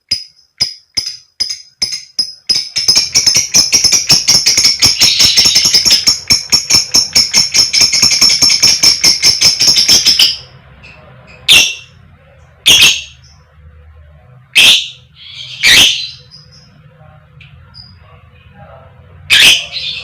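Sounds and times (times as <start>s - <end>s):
lovebird calling: 1.0s - 11.9s.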